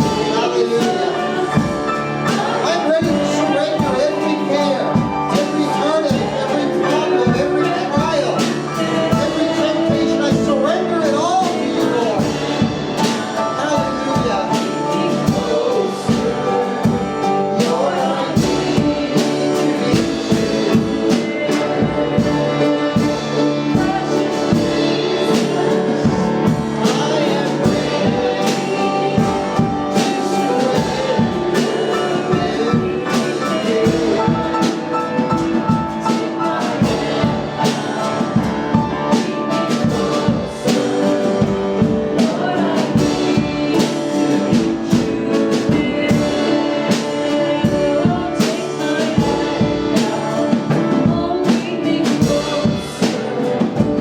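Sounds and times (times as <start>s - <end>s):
drum kit beat: 0.0s - 54.0s
worship band music: 0.0s - 54.0s.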